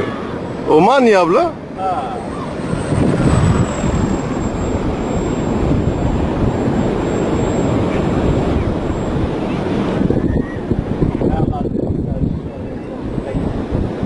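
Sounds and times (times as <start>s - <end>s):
wind rumble on microphone: 0.0s - 14.0s
model plane motor whine: 1.8s - 10.9s.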